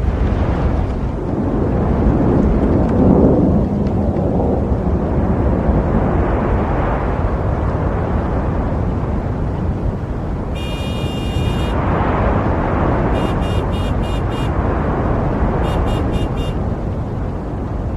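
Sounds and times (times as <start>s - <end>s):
car horn long honk: 10.6s - 11.8s, 13.1s - 14.6s, 15.6s - 16.6s
car horns short toots: 10.6s - 11.8s, 13.1s - 14.6s, 15.6s - 16.6s
passing cars roar: 10.6s - 17.9s.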